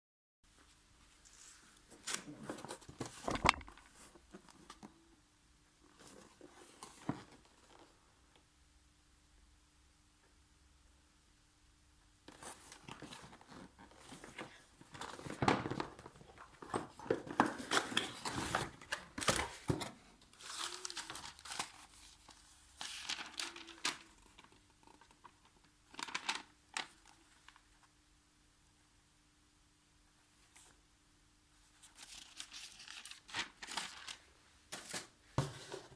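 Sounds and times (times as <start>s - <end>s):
packaging rustling: 12.4s - 25.1s, 25.9s - 27.1s, 31.9s - 35.2s.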